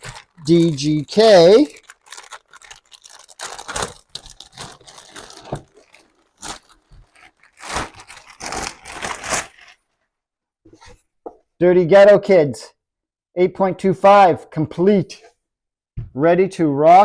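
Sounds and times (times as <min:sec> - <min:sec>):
packing paper crumpling and tearing: 0:00.0 - 0:09.9.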